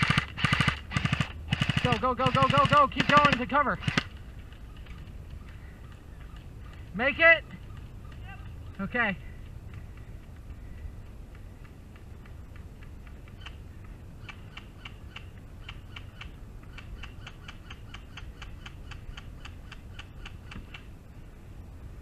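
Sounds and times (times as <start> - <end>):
airsoft gunfire clicks: 0.0 - 6.5
steady low rumble: 0.0 - 22.0.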